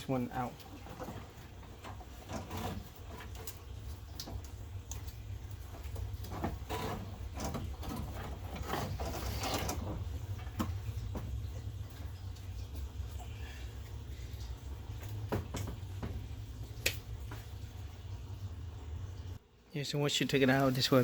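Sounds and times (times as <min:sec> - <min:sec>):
radiator knocking and scraping: 0:00.4 - 0:12.2.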